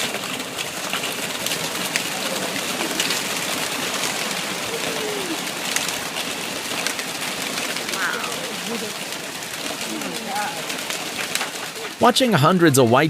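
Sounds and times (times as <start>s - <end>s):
doves wings flapping: 0.0s - 12.9s
faint dove call: 2.0s - 5.9s, 7.8s - 10.8s.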